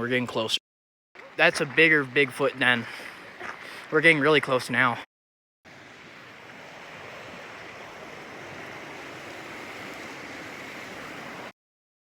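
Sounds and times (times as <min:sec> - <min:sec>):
rushing water hiss: 0:05.7 - 0:11.5.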